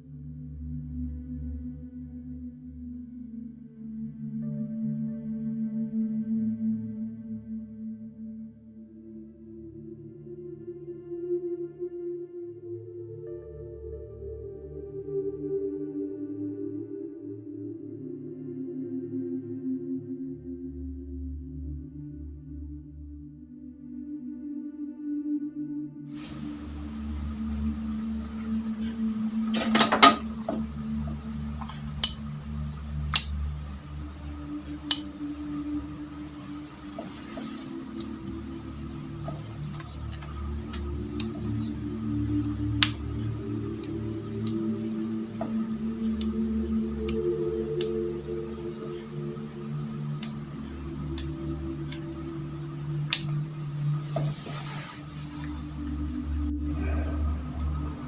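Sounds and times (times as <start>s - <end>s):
steady low hum: 26.2s - 58.0s
sharp clicks: 29.6s - 32.2s, 33.1s - 33.5s, 34.7s - 37.0s.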